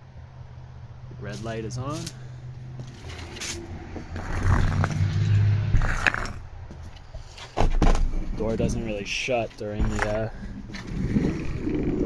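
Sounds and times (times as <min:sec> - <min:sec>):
door scraping open: 0:03.0 - 0:06.4.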